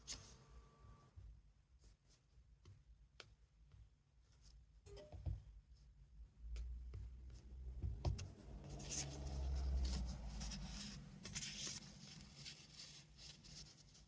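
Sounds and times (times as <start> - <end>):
low bumps on work surface: 6.6 - 8.6.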